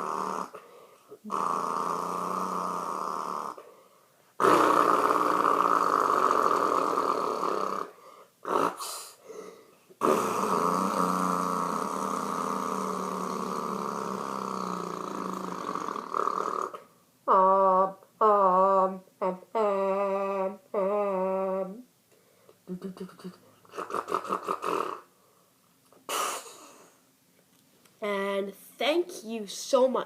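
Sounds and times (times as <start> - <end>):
person imitating truck engine: 4.4 - 7.7, 10.0 - 21.8, 22.7 - 25.0.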